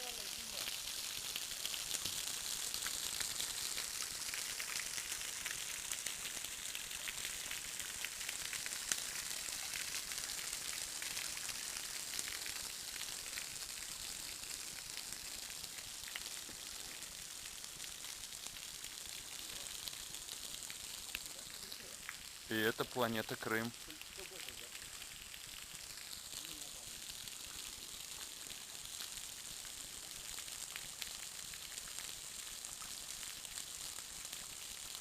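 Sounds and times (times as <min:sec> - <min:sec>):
waterfall splashing: 0:00.0 - 0:00.7.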